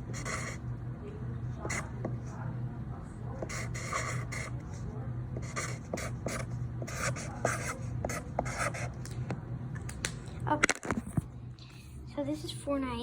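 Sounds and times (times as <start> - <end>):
pen scratching on surface: 0.0 - 0.6, 1.7 - 2.2, 3.4 - 4.8, 5.4 - 8.9.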